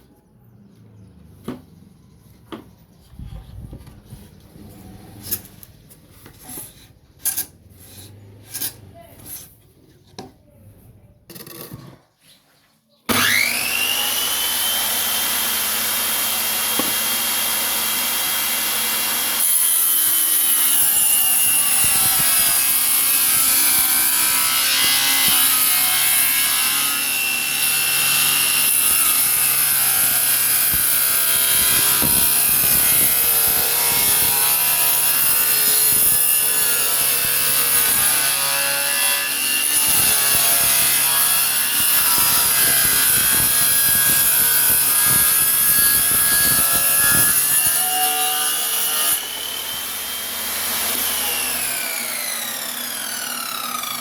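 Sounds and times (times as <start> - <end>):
saw blade cutting wood: 4.6 - 9.6, 13.1 - 54.0
saw motor whining: 13.1 - 19.5, 20.3 - 54.0.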